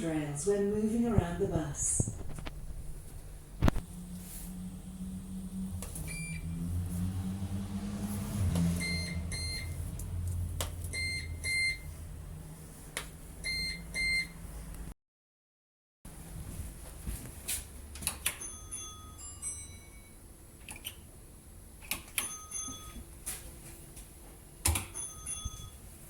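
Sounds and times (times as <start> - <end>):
card reader beeping: 22.2 - 23.0, 24.7 - 25.8.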